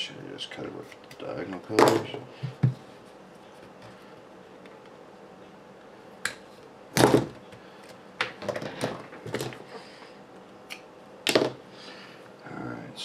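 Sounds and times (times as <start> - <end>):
parts clattering on workbench: 8.2 - 9.8.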